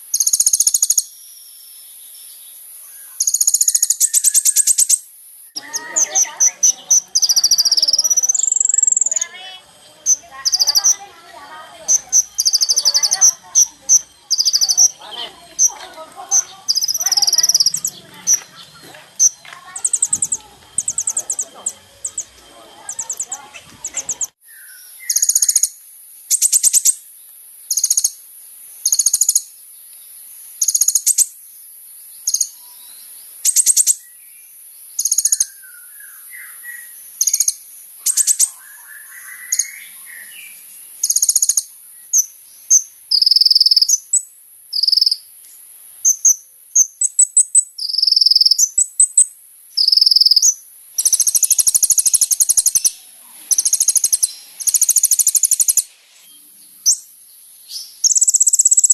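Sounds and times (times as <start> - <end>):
steady high hiss: 0.0 - 58.9
bird singing high trills: 2.8 - 27.0, 35.0 - 45.2, 46.1 - 57.1, 57.7 - 58.9.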